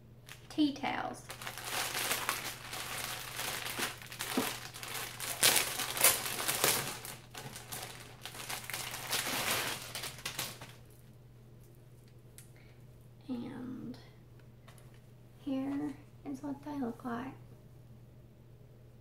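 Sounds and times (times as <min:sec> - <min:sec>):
packaging crinkling and rustling: 0:00.3 - 0:00.6, 0:01.2 - 0:11.0.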